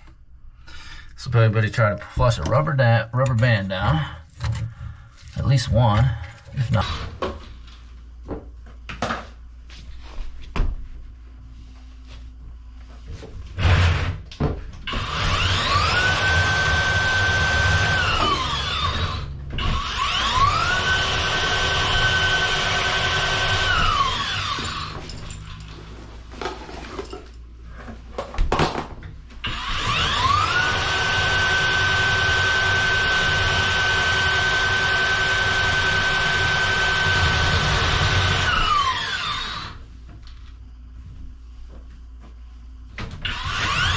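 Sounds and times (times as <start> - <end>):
drain auger motor whining: 14.9 - 25.0, 29.5 - 39.8, 43.2 - 43.9.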